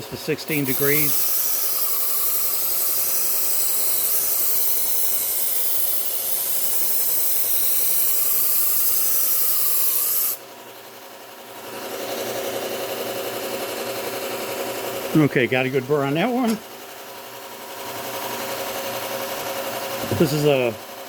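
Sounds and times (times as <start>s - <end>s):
knife grinding on belt sander: 0.0s - 10.5s, 11.6s - 16.7s
belt sander running: 0.0s - 20.9s.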